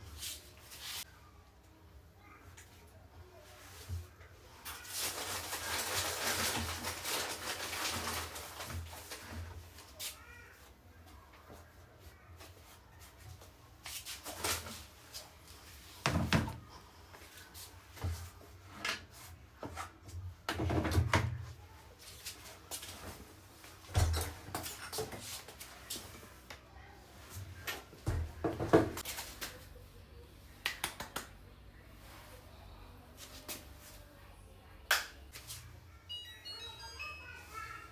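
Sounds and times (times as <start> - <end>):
rustling: 3.4 - 10.3.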